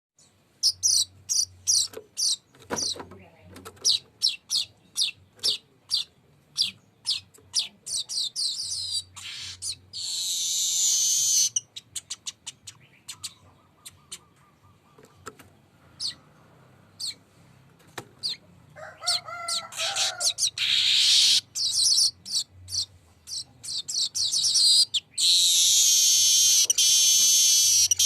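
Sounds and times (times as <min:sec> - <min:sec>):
weaver bird chirping: 0:00.2 - 0:03.0, 0:03.8 - 0:17.2, 0:18.2 - 0:28.0
buzzing bird trill: 0:25.3 - 0:28.0.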